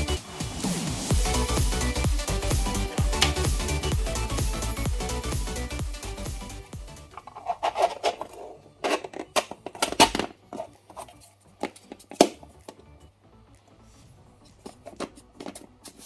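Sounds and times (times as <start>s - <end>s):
small parts clicking and scraping: 7.1s - 12.2s.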